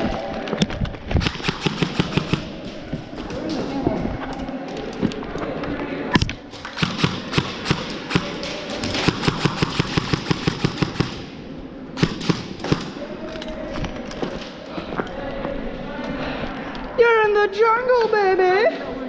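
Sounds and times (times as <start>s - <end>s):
airsoft guns firing: 1.2s - 2.9s, 6.5s - 11.4s, 12.0s - 13.1s.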